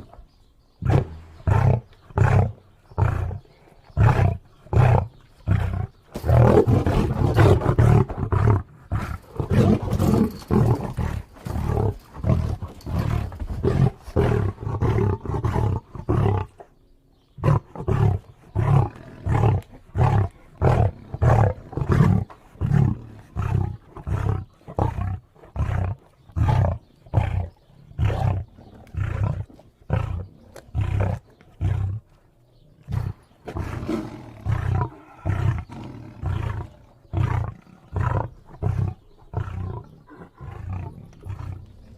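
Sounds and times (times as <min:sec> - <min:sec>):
lion roaring grunts: 0:17.4 - 0:32.0, 0:32.6 - 0:41.9.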